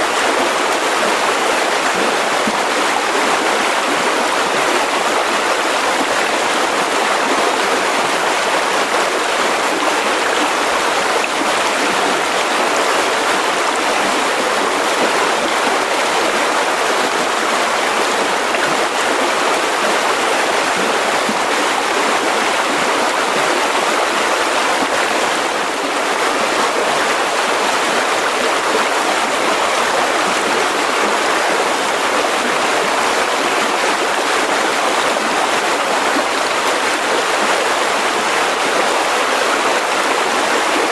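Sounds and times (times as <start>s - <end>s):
river rushing over rocks: 0.0s - 40.9s.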